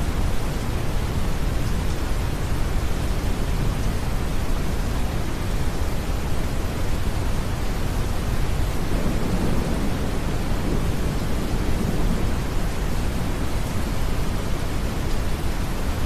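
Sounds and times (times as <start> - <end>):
rain hiss: 0.0 - 16.0
distant thunder rolling: 8.4 - 16.0.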